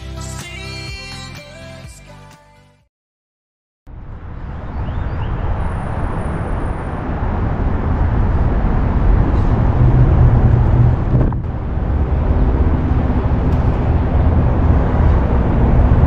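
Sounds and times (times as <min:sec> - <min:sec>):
low urban rumble: 0:03.9 - 0:16.0.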